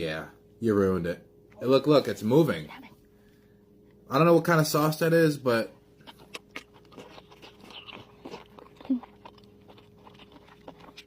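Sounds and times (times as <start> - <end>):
wet chewing and smacking: 5.9 - 11.0.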